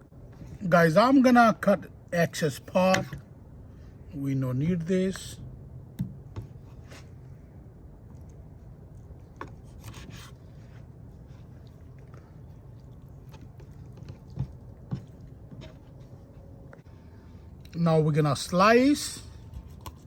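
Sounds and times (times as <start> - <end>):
low steady hum: 0.0 - 20.0
knife scraping on cutting board: 9.4 - 10.8.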